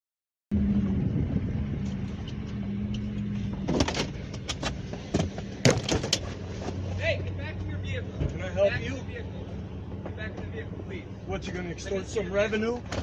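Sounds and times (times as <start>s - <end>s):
sharp clicks and knocks: 1.8s - 6.8s.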